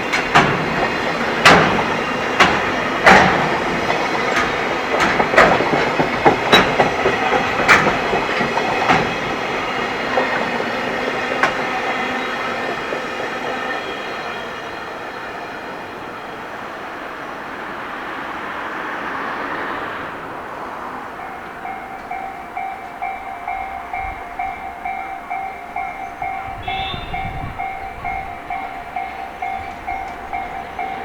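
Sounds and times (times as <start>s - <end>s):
train wheels clattering over rail joints: 0.0s - 15.2s
train rumble: 0.0s - 31.0s.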